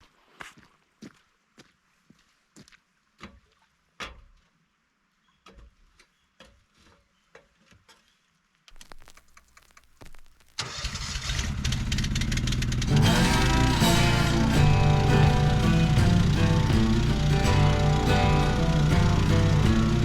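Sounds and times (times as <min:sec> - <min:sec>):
snowblower engine starting and running: 0:10.6 - 0:20.0.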